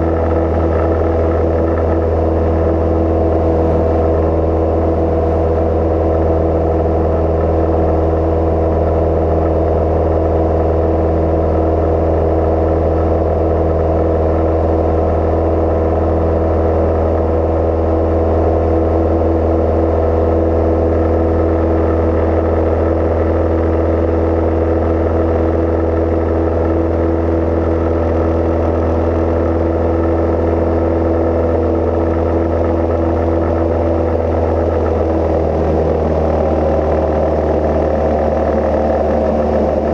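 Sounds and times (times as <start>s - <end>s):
propeller aircraft engine droning: 0.0s - 39.9s.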